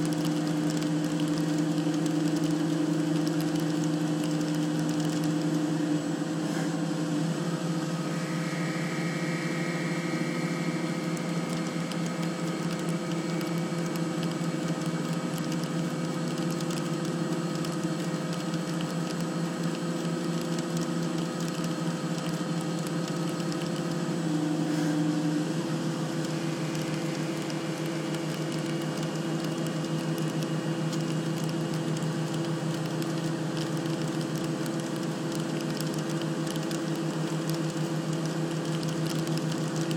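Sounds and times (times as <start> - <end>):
machine tool humming: 7.2 - 39.9.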